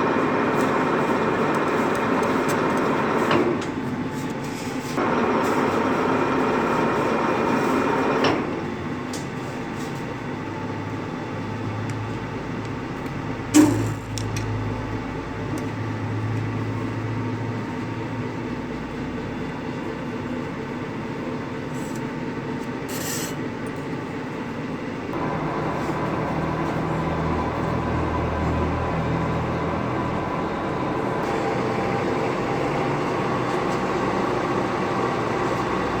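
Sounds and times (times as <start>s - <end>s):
lathe humming: 25.2s - 36.0s.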